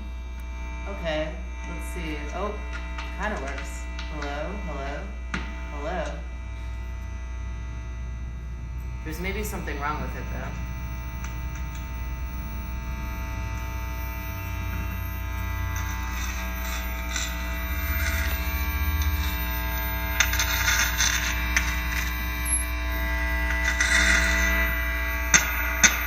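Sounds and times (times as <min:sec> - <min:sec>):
electrical hum and buzz: 0:00.0 - 0:26.0
scratchy noise bursts: 0:08.4 - 0:26.0.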